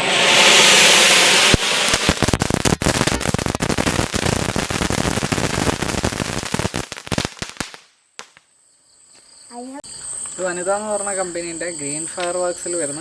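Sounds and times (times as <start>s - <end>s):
firework crackling: 0.0s - 8.4s.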